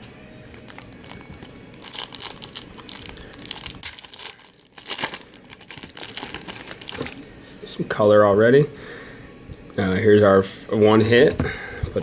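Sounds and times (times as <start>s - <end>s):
plastic wrapper crinkling and tearing: 0.5s - 7.3s.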